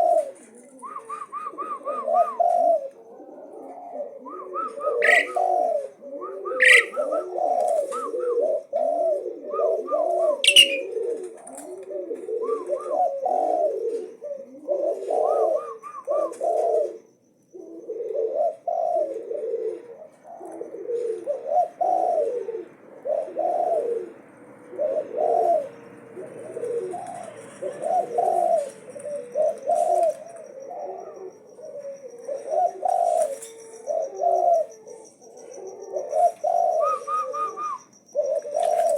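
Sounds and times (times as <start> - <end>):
high chirps and squeaks: 5.0 - 5.3, 6.6 - 6.9, 10.4 - 10.8
starling warbling: 5.0 - 5.4, 6.6 - 7.0, 10.4 - 10.9.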